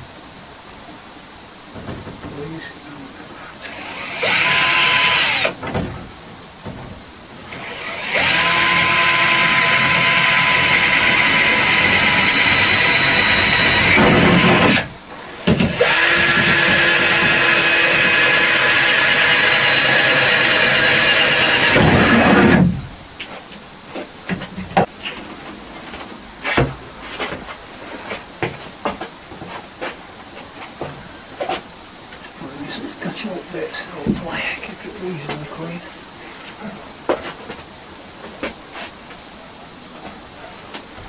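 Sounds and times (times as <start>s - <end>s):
electric power tool whining: 3.6s - 5.6s, 7.5s - 22.8s.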